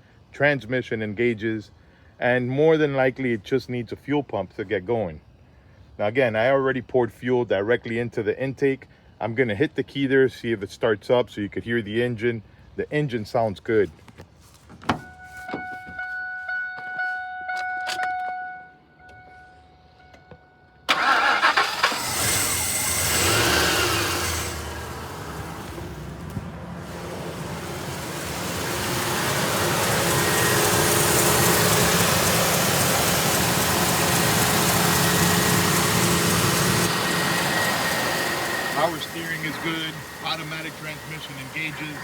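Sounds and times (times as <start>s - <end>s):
pitched chime dinging: 15.0s - 20.7s
truck engine starting and running: 20.8s - 42.0s.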